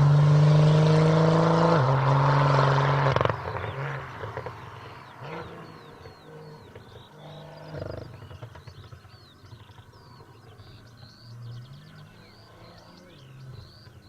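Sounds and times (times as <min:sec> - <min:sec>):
car engine idling: 0:03.2 - 0:14.0
small birds chirping: 0:03.2 - 0:14.0.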